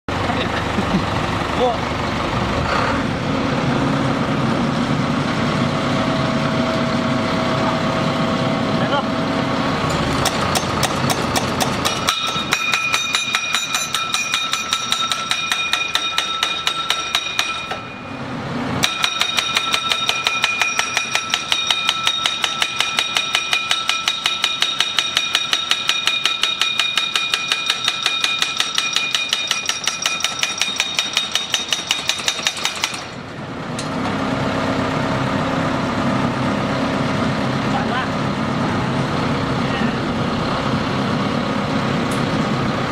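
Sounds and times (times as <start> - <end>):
machine engine running: 0.1 - 11.9
pile driver hammering metallic: 9.8 - 33.2.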